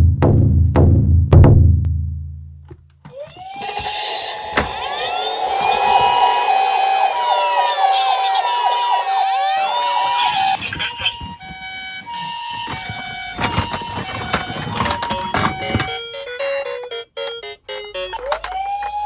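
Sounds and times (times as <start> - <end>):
two-tone ambulance siren: 3.1 - 19.0.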